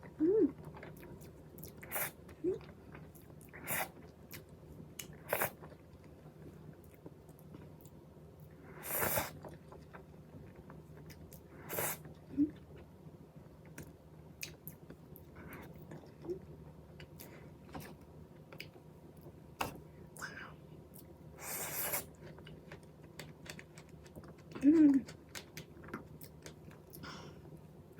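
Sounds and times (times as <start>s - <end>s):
person eating and chewing: 20.9s - 27.0s.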